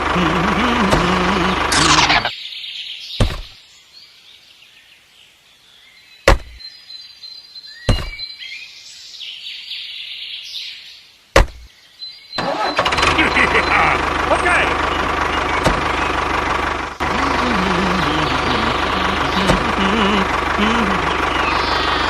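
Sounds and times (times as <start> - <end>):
birds chirping faintly: 0.2 - 12.4, 13.0 - 22.0
sharp knocks: 3.2 - 3.6, 6.3 - 6.6, 7.9 - 8.2, 11.4 - 11.7.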